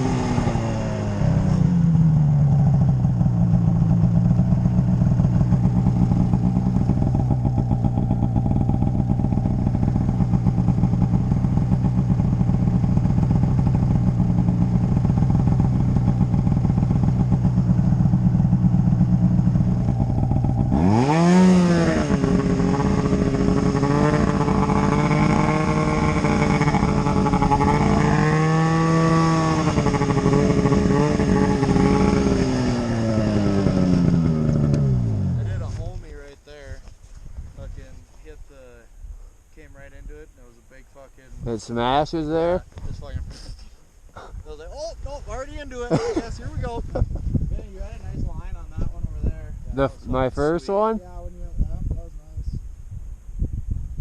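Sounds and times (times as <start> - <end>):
snowmobile engine revving: 0.0 - 36.4, 45.3 - 47.0, 49.8 - 51.0.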